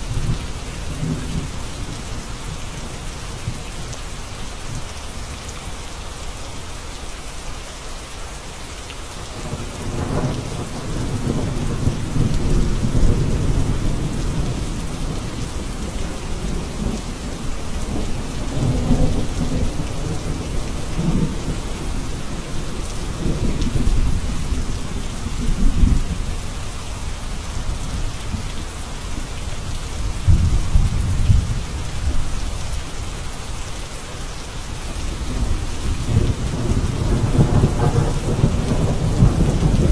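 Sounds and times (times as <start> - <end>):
steady rain falling: 0.0 - 39.9
low rolls of thunder: 9.4 - 26.3, 35.1 - 39.9.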